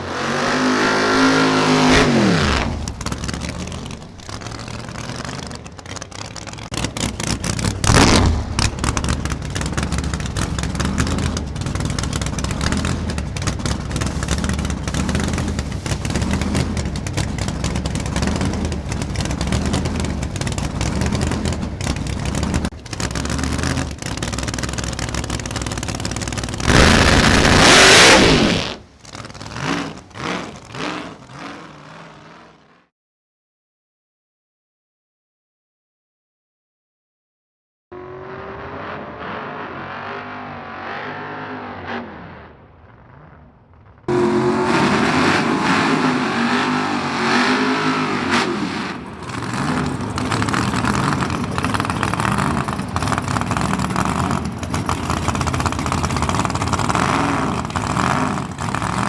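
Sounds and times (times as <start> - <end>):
race car engines at full power: 0.0 - 32.9, 37.9 - 59.0.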